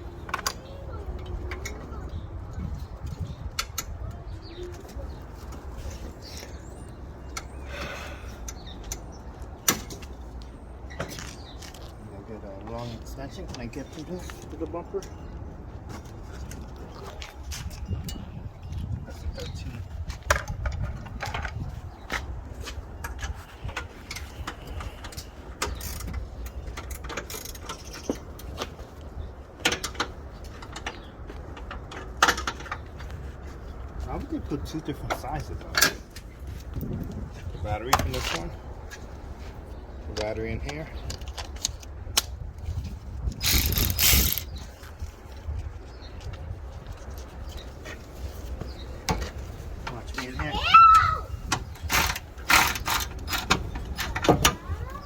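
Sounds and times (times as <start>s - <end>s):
birds chirping: 0.0s - 20.0s, 27.6s - 42.0s, 43.4s - 55.0s
ratchet wrench clicking: 43.4s - 44.5s.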